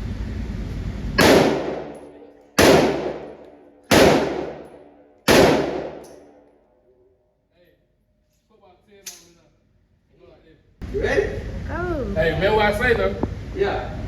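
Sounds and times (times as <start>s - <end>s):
gunshots echoing: 1.2s - 6.4s.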